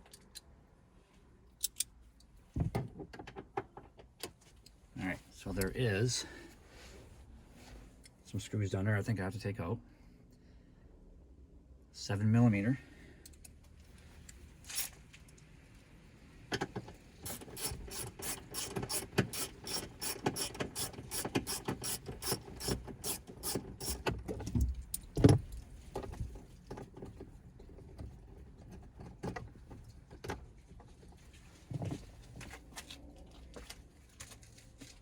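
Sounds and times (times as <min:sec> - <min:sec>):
ratchet wrench clicking: 0:17.2 - 0:24.1.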